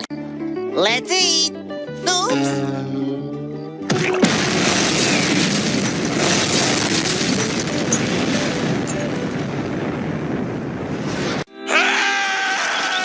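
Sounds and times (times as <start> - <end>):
cartoon explosion: 3.9 - 11.4.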